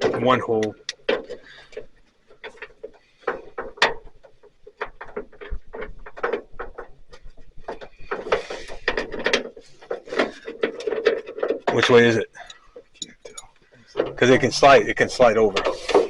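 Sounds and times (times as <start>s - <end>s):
metal tool clicks and knocks: 11.6s - 13.6s.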